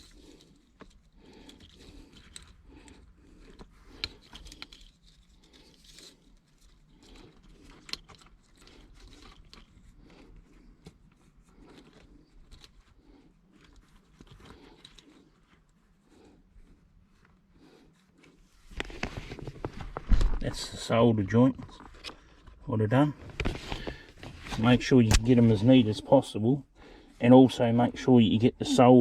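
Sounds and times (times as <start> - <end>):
wiring scraping and rustling: 0.0 - 15.8, 18.1 - 22.6, 23.2 - 26.0.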